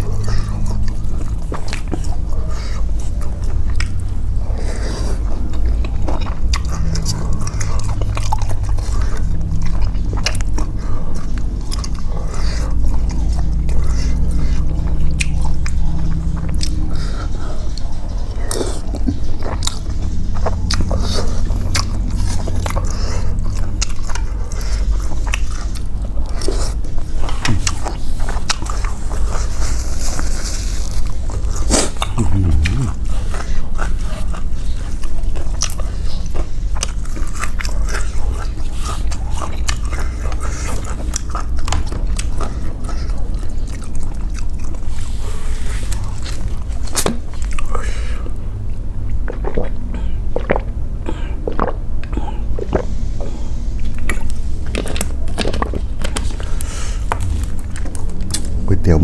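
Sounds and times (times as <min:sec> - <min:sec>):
person chewing and eating: 0:00.0 - 0:59.0
low hum: 0:32.0 - 0:33.4, 0:52.4 - 0:59.0.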